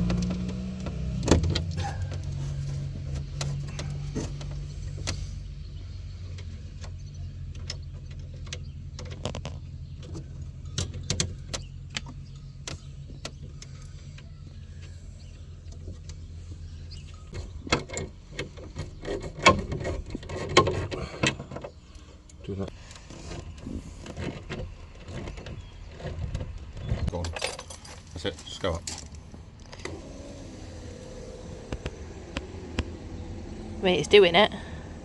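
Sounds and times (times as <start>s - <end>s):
electric window motor humming: 29.7s - 35.0s.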